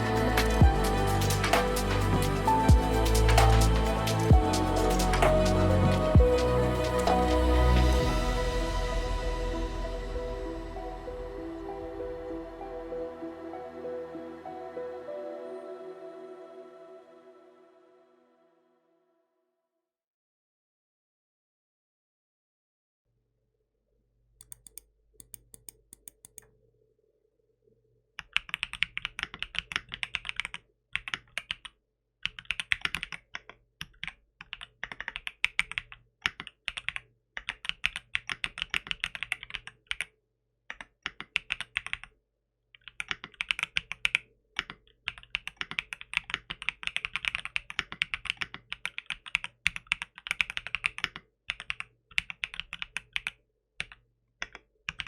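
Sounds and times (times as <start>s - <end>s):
mechanical keyboard typing: 24.4s - 26.4s, 28.2s - 40.1s, 40.7s - 42.1s, 42.8s - 55.0s.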